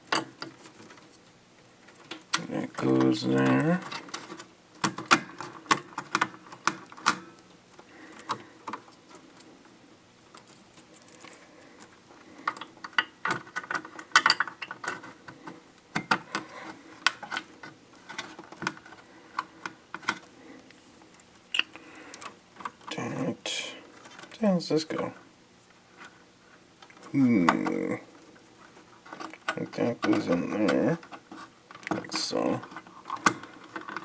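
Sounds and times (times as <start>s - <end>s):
wire connectors clicking and rattling: 10.3s - 20.3s, 29.0s - 34.0s.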